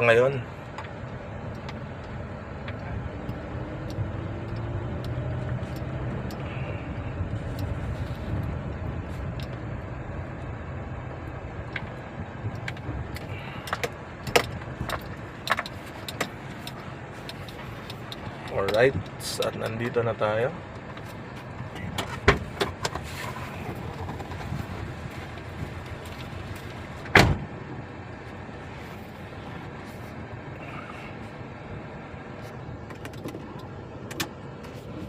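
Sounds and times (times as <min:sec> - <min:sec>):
car engine and road hum: 0:00.0 - 0:35.0
sharp clicks and knocks: 0:11.7 - 0:20.0.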